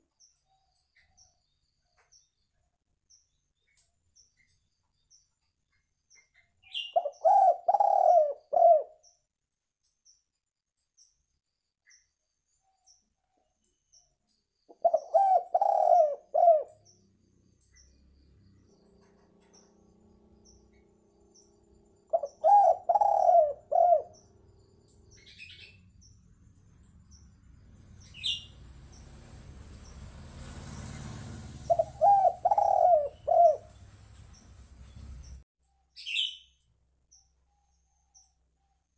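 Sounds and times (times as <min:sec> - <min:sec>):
dove cooing: 0:06.8 - 0:09.0, 0:14.7 - 0:16.9, 0:22.1 - 0:24.3, 0:31.0 - 0:33.8.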